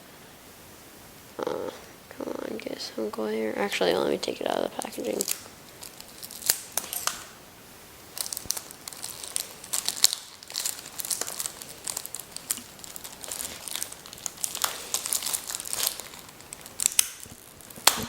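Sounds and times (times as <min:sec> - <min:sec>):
packaging crackling and rustling: 0:04.2 - 0:07.4, 0:08.0 - 0:18.0.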